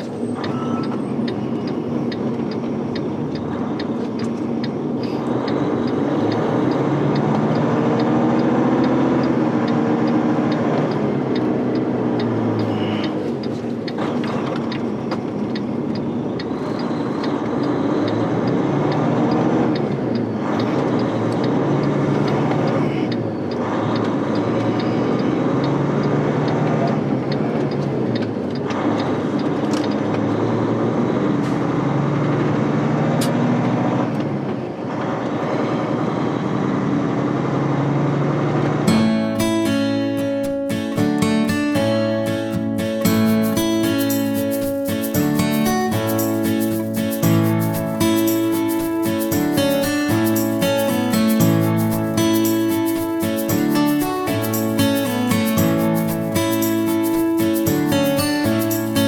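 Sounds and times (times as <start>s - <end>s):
truck diesel engine: 0.0s - 38.8s
road noise: 0.0s - 59.0s.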